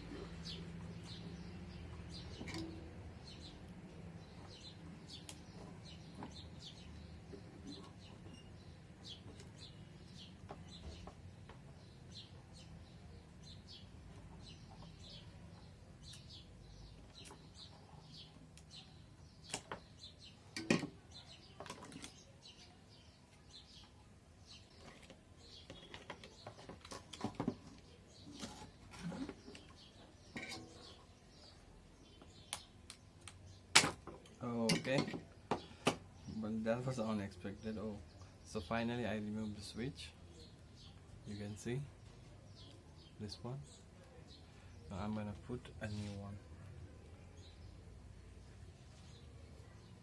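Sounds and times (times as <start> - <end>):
bird chirps: 4.2 - 11.2.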